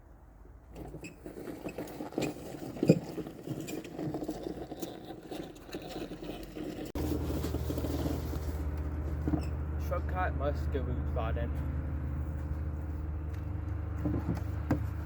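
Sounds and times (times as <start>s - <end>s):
wheelbarrow rattling and knocking: 0.8s - 8.5s.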